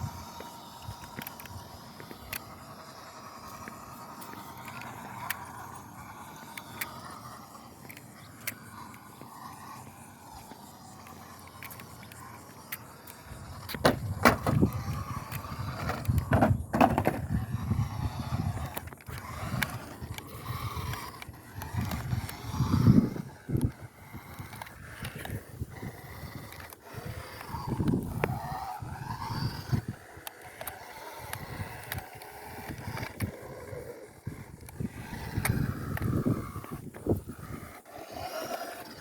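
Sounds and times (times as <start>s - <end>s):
small electric motor whine: 0.0s - 39.0s
wheels rumbling: 0.0s - 39.0s
plastic body rattling: 15.8s - 17.4s.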